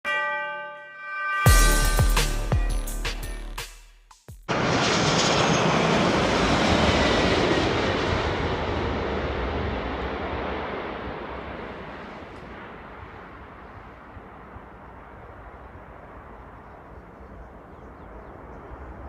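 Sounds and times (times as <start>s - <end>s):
music intro: 0.1s - 4.4s
jet engine passing close: 4.5s - 19.0s.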